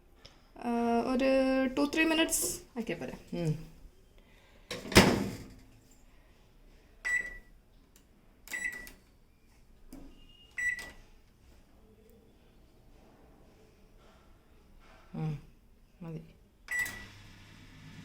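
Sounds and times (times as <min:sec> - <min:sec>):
oven door thud: 0:04.7 - 0:05.5
oven beeping: 0:16.7 - 0:17.2.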